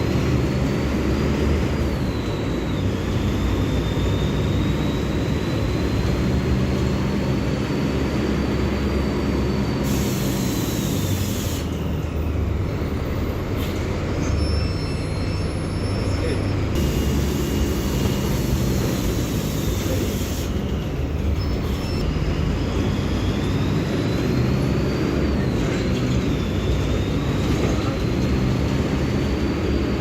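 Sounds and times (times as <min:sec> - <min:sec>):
bus diesel engine droning: 0:00.0 - 0:30.0
air hiss: 0:09.8 - 0:11.7.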